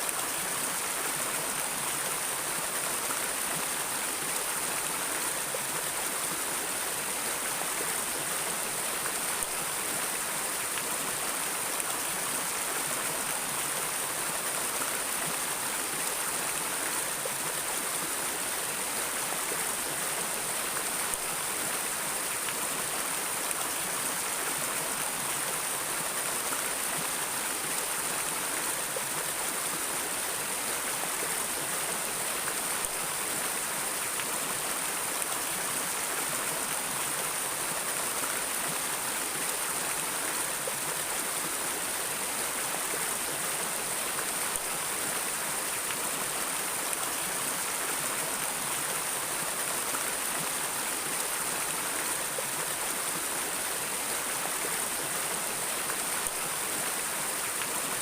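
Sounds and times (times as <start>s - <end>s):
stream water rushing: 0.0s - 58.0s.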